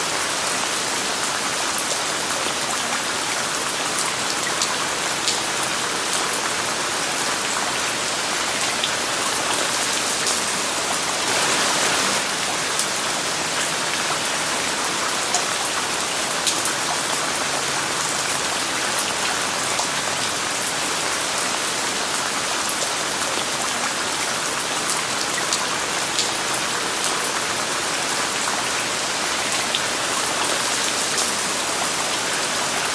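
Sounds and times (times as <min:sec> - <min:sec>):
steady rain falling: 0:00.0 - 0:32.9
white noise: 0:08.1 - 0:13.0.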